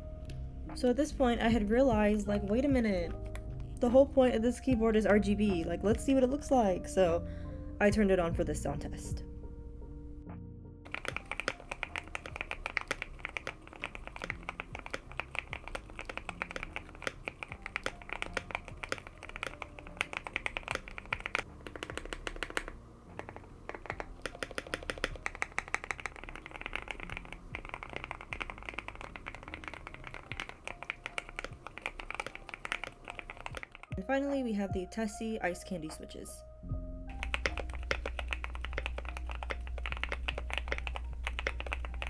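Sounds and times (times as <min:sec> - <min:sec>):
fast mechanical keyboard typing: 0:10.9 - 0:34.0, 0:37.1 - 0:42.0.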